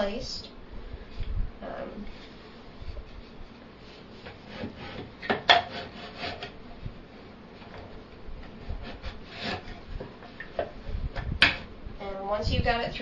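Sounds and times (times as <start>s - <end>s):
wooden parts rubbing and scraping: 2.1s - 6.6s, 8.4s - 11.7s.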